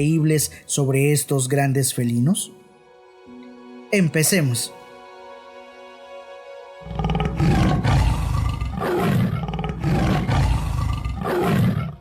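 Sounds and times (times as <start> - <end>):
tiger roaring: 6.8 - 12.0.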